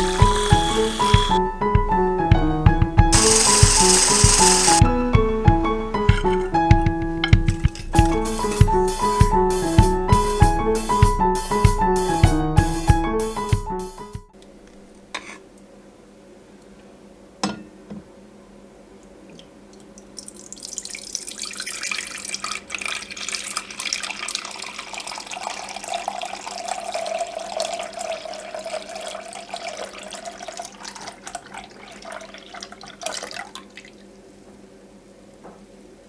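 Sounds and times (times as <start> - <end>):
steady ringing tone: 0.0 - 1.4, 3.2 - 4.8
liquid pouring into vessel: 20.2 - 34.0.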